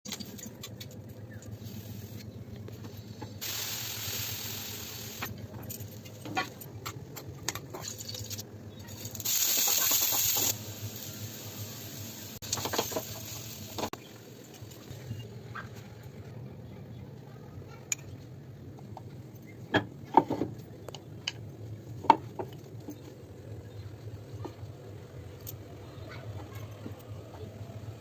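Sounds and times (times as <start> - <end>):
cooking hiss: 1.3 - 5.6, 7.5 - 15.6.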